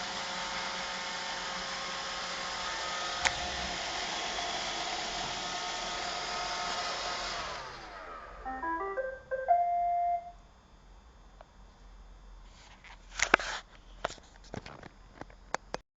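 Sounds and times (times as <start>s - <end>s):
rising electronic beep tune: 8.5s - 10.3s.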